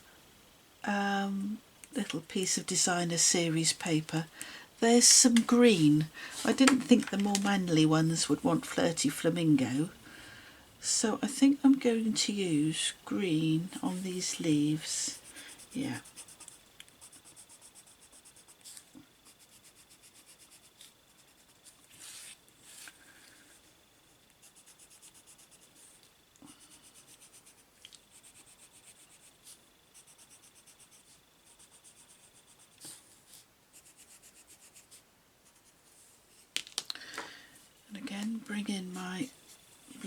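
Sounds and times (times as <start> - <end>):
pencil scribbling on paper: 15.1 - 18.6, 19.3 - 21.7, 26.7 - 33.0, 33.7 - 35.8.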